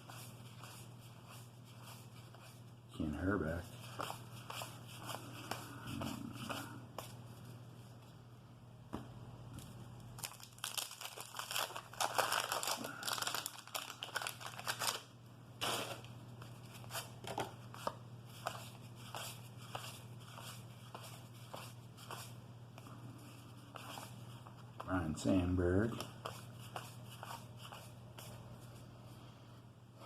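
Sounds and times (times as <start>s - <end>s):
wax paper crinkling and tearing: 10.2s - 16.1s.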